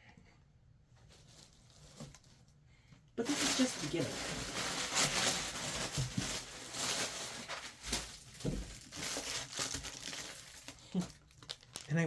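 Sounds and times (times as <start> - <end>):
packaging rustling and crinkling: 3.2 - 12.0.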